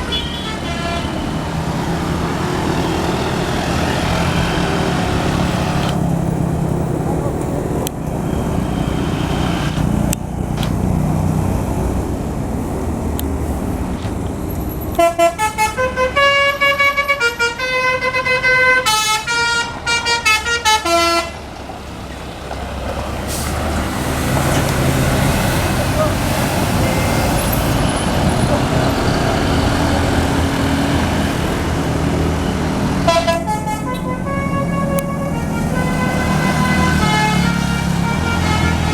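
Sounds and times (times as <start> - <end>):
multi-tone bus horn tune: 0.0 - 1.6, 14.9 - 21.5, 25.9 - 27.9, 32.4 - 38.9
bus engine running: 0.0 - 38.9.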